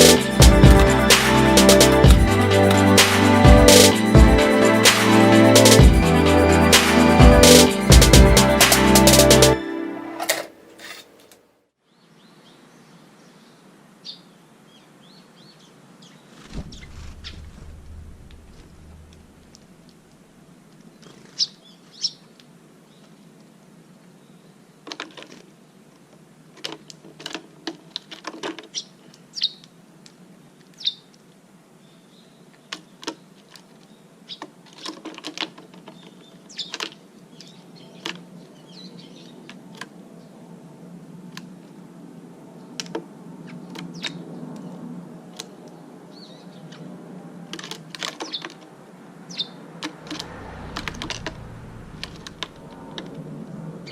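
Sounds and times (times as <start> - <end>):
small birds chirping: 30.8 - 31.2, 35.9 - 39.5.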